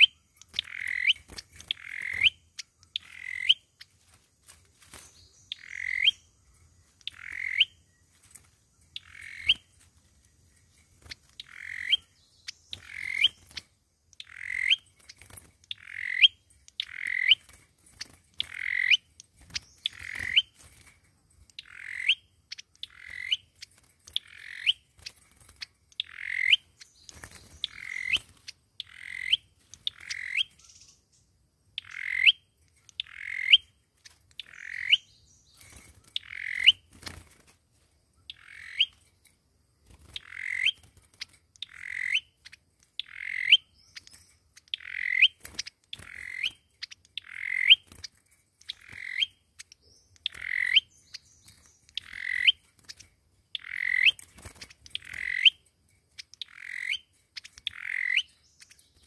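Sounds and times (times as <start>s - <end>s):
songbird calls with upward flick: 0.0s - 3.7s, 5.2s - 6.3s, 56.2s - 59.0s.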